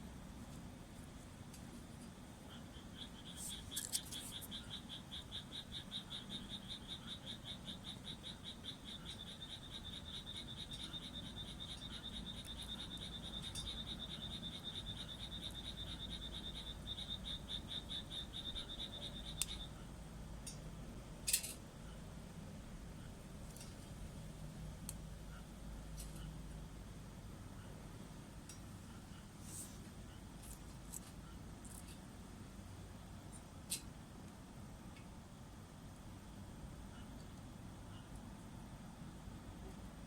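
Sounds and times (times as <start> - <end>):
frog calling: 2.5 - 19.8.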